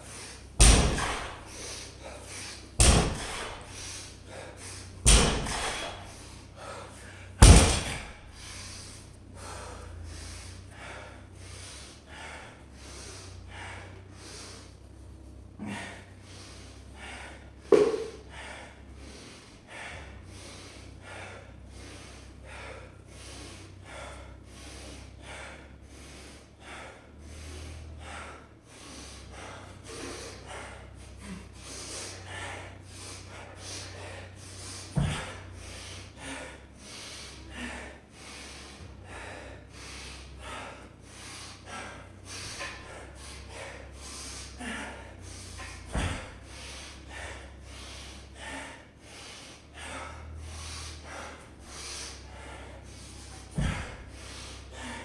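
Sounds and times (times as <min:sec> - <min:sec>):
fast heavy breathing: 0:00.0 - 0:55.0
barbell thudding on floor: 0:00.6 - 0:01.8, 0:02.7 - 0:04.1, 0:05.0 - 0:06.4, 0:07.4 - 0:08.9, 0:17.7 - 0:18.2, 0:35.0 - 0:35.4, 0:53.6 - 0:54.0
small knock: 0:17.7 - 0:18.2.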